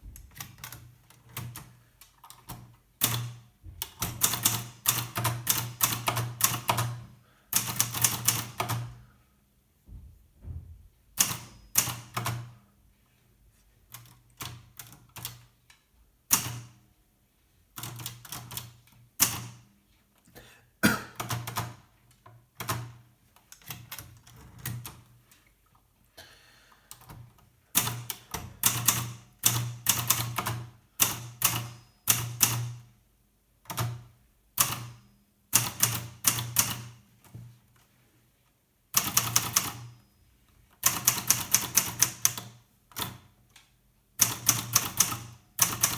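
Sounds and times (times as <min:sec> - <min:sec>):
typewriter keys striking: 0:44.2 - 0:45.9.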